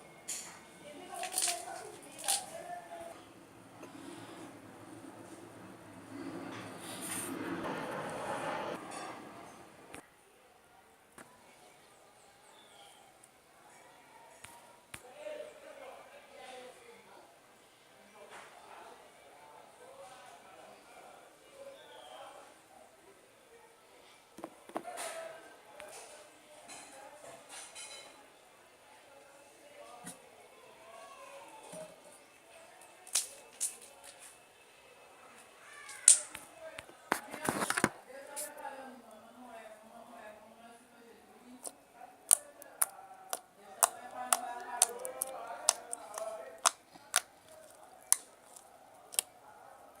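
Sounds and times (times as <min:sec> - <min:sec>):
faint background voices: 0:00.0 - 0:50.0
slime squelching: 0:01.0 - 0:02.8, 0:41.6 - 0:50.0.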